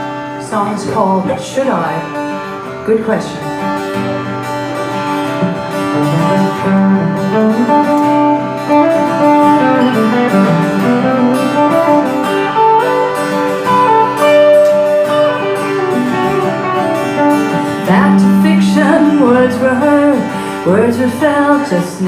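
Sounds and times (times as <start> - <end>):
guitar picked notes and chords: 0.0 - 22.0.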